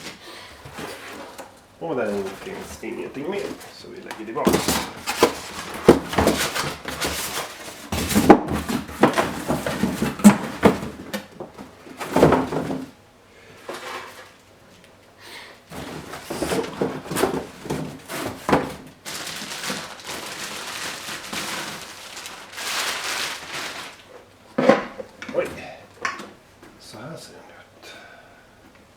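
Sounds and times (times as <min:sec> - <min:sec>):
packaging rustling: 0:00.0 - 0:13.0, 0:15.7 - 0:24.4
cardboard box knocks and scrapes: 0:04.4 - 0:12.9, 0:15.7 - 0:18.9.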